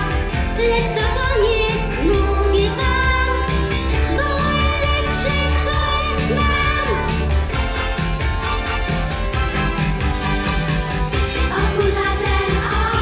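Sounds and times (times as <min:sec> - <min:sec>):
person singing: 0:00.0 - 0:07.9, 0:10.6 - 0:13.0
amateur band music: 0:00.0 - 0:13.0
steady bass line: 0:00.0 - 0:13.0.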